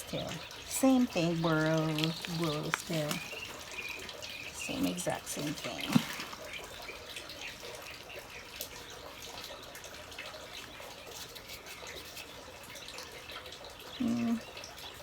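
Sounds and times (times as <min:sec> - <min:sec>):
soil rustling: 0:00.0 - 0:07.0
pebbles clicking: 0:01.0 - 0:04.2.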